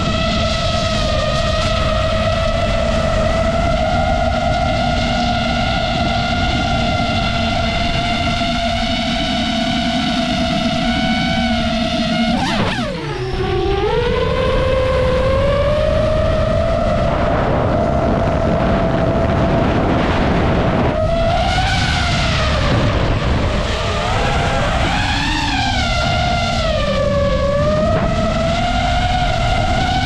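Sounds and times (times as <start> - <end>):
drone motors whining: 0.0 - 30.0
wind rushing: 15.4 - 30.0.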